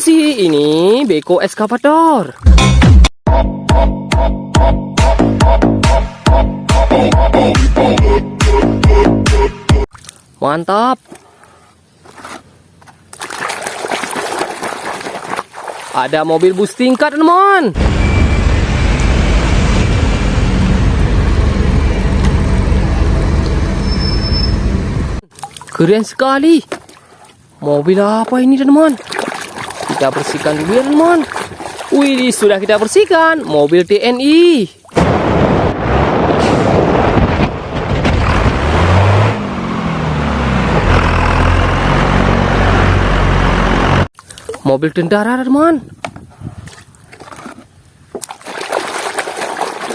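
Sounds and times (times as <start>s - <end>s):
heavy vehicle engine rumbling: 17.8s - 25.2s, 36.3s - 44.1s
water running: 28.0s - 34.8s.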